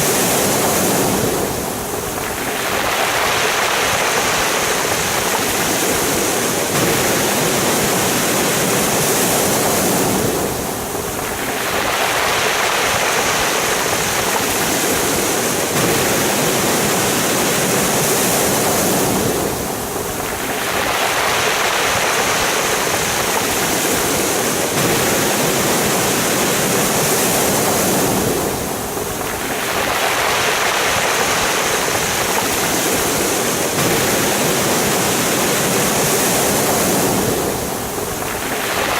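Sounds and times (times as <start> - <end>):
waves washing over pebbles: 0.0 - 38.9.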